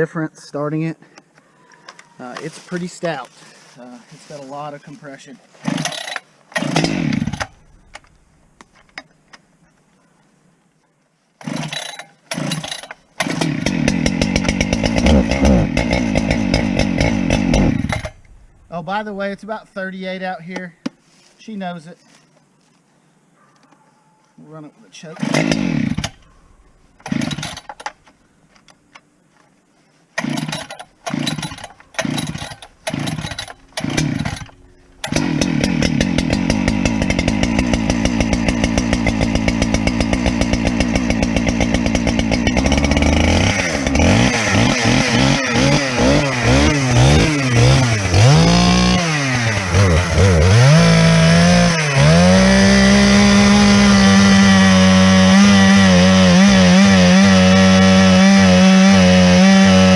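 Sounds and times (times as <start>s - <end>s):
chainsaw engine revving: 5.6s - 8.2s, 11.4s - 19.5s, 25.0s - 26.3s, 27.0s - 28.0s, 30.2s - 59.9s
chainsaw starter cord pulls: 5.6s - 9.0s, 11.4s - 18.4s, 25.0s - 26.3s, 27.0s - 28.1s, 30.2s - 59.9s.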